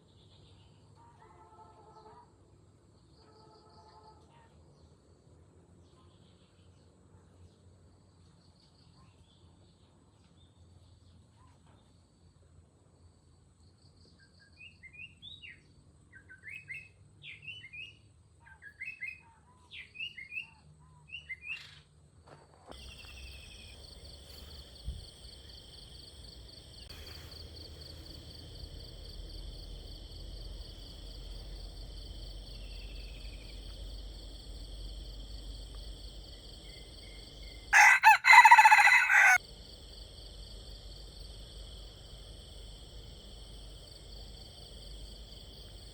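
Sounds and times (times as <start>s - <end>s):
high insect drone: 22.8s - 45.9s
rooster crowing: 37.7s - 39.4s.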